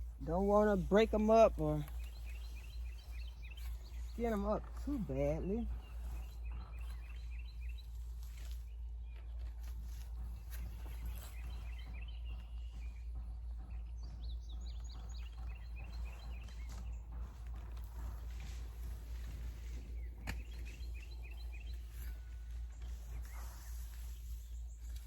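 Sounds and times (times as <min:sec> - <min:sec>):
hands rustling in soil: 0:00.0 - 0:12.5, 0:16.0 - 0:25.0
low outdoor rumble: 0:00.0 - 0:25.0
small birds chirping: 0:00.0 - 0:25.0.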